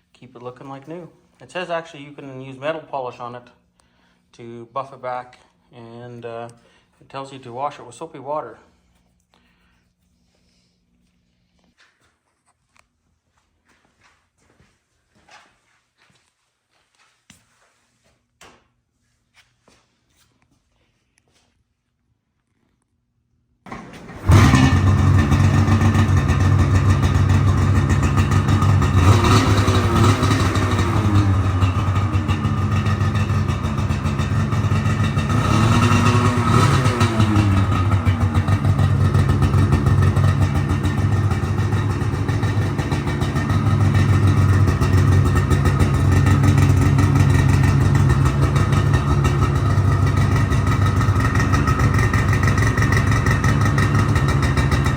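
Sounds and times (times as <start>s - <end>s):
engine throttle blips: 23.7s - 54.9s
snowmobile engine idling: 23.7s - 54.9s.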